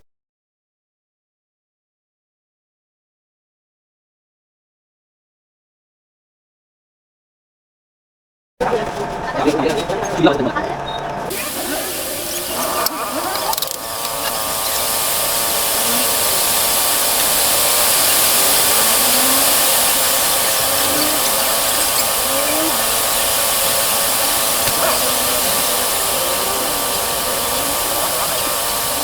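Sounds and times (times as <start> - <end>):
motorcycle engine running: 8.6 - 29.0.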